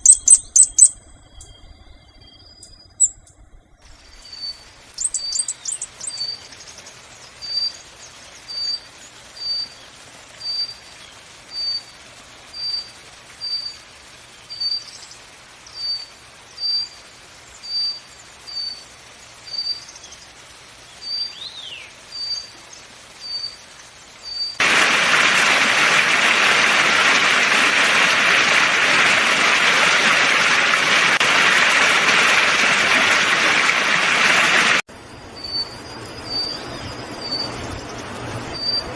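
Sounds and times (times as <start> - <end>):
bird chirps: 0.0 - 9.8, 24.2 - 24.6, 35.2 - 38.9
loud steady hiss: 3.9 - 38.9.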